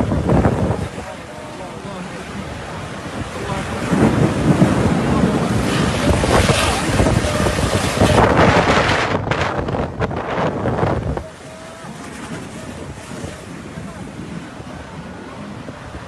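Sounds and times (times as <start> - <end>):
heavy storm rain: 0.0 - 16.0
wind buffeting microphone: 0.0 - 16.0.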